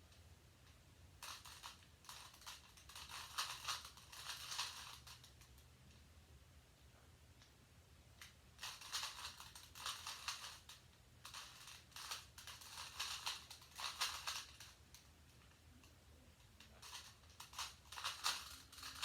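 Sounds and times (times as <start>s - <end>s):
puzzle cube clicking: 1.2s - 5.4s, 8.6s - 14.8s, 16.5s - 19.0s.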